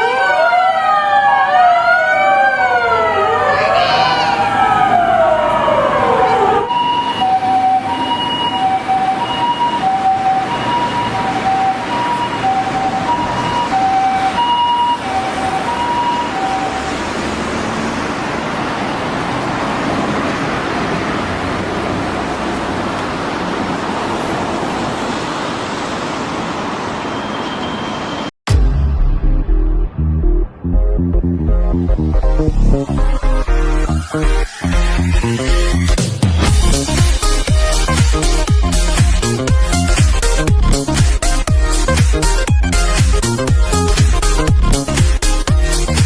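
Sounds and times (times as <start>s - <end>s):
ambulance siren: 0.0s - 25.4s
traffic noise: 0.0s - 28.4s, 30.5s - 46.0s.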